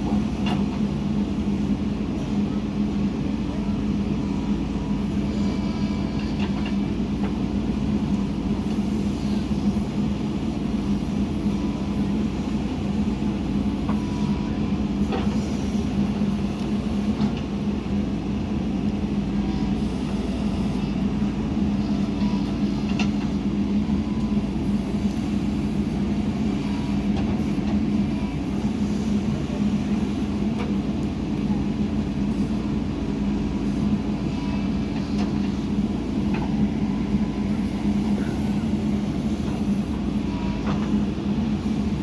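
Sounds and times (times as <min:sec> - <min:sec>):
diesel engine running: 0:00.0 - 0:42.0.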